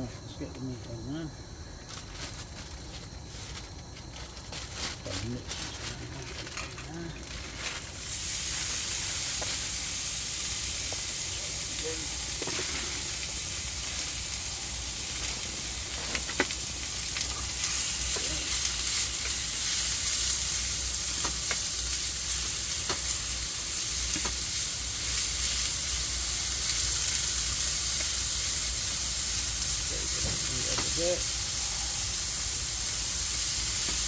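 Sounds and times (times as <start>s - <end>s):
meat sizzling in a pan: 7.2s - 34.0s.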